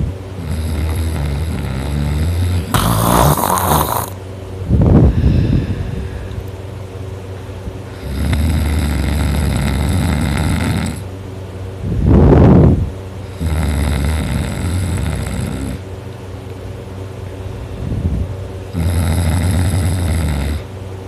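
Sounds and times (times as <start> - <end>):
person snoring loudly: 0.4 - 4.2, 7.9 - 11.1, 13.3 - 15.8, 18.7 - 20.7.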